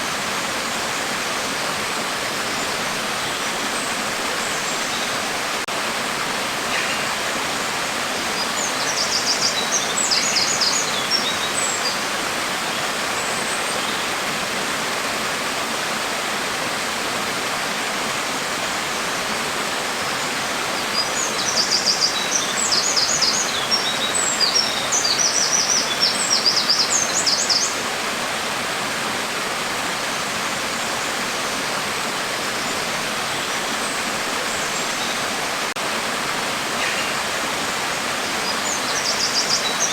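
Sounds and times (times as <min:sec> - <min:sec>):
steady rain hiss: 0:00.0 - 0:39.9
birds chirping: 0:36.7 - 0:37.3, 0:37.9 - 0:39.9.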